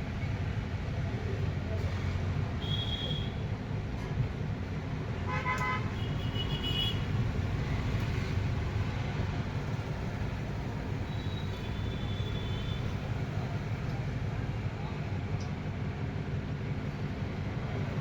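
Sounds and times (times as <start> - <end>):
traffic rumble: 0.0 - 18.0
vehicle horns tooting: 2.6 - 3.4, 5.3 - 7.1, 11.1 - 13.0.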